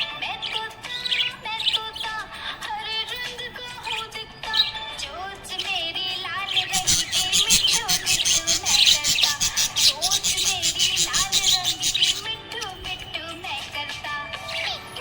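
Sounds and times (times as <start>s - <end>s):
music with sung melody: 0.0s - 15.0s
budgerigar chirping: 6.3s - 12.4s.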